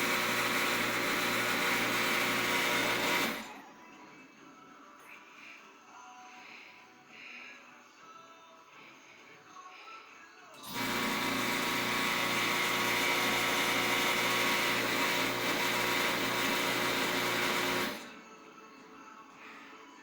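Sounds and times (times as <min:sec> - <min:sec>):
electric vacuum pump humming: 0:00.0 - 0:03.7, 0:10.6 - 0:18.4.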